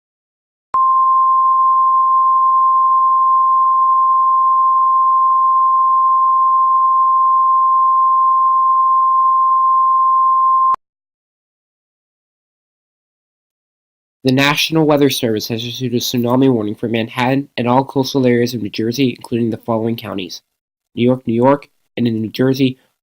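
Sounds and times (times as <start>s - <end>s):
steady high alarm tone: 0.8s - 10.8s.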